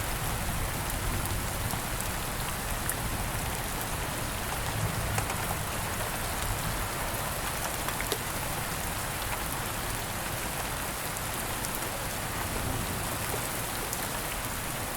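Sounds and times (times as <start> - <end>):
steady rain hiss: 0.0 - 14.9
raindrop ticks: 4.4 - 6.6, 7.3 - 8.4.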